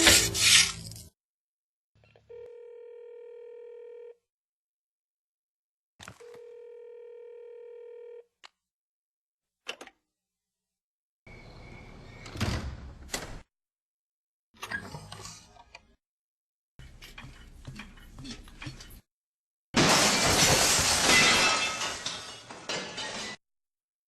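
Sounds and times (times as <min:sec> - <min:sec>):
telephone line tone: 0:02.3 - 0:04.2, 0:06.2 - 0:08.3.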